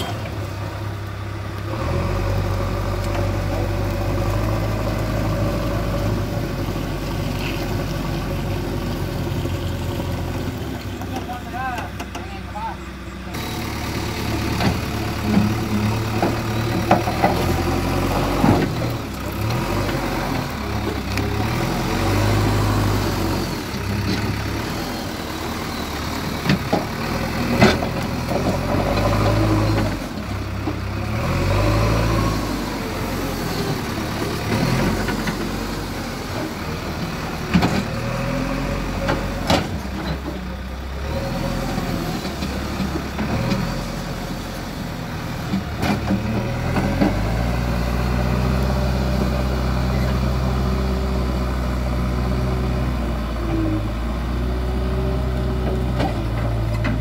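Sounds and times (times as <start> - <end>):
diesel engine under changing load: 0.0 - 57.0.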